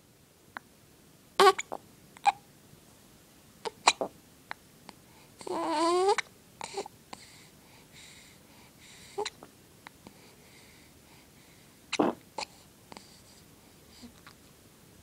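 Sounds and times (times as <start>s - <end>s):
baby hiccuping: 1.4s - 2.4s, 3.6s - 4.2s, 5.4s - 6.9s, 11.9s - 12.6s
baby whiny cry: 5.4s - 6.2s.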